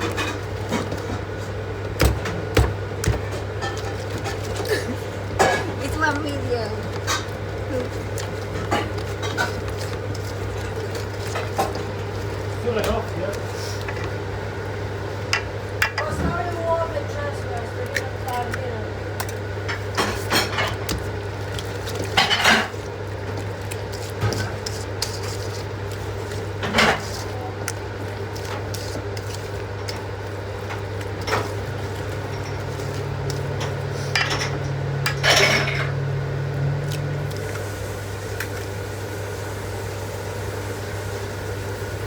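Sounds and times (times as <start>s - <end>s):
utensils and dishes clattering: 3.1s - 12.1s, 21.9s - 22.8s, 26.6s - 27.5s, 30.6s - 36.0s.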